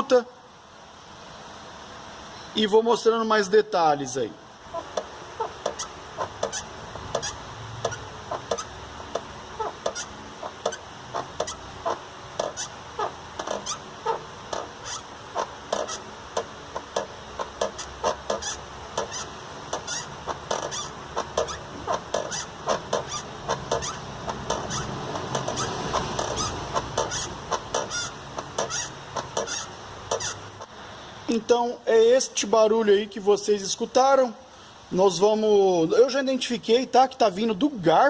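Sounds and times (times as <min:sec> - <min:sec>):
clutch pedal squeaking: 0:04.8 - 0:30.7.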